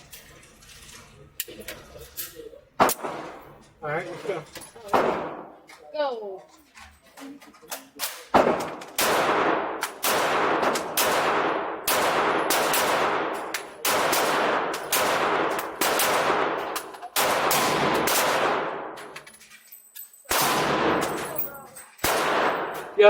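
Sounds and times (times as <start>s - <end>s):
pistol shots echoing: 2.8s - 3.5s, 4.9s - 5.6s, 8.2s - 19.2s, 20.3s - 21.4s, 22.0s - 23.0s.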